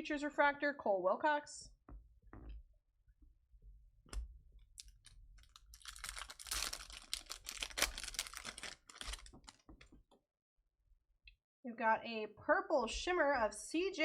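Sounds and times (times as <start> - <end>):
foil pack crinkling: 4.8 - 10.0.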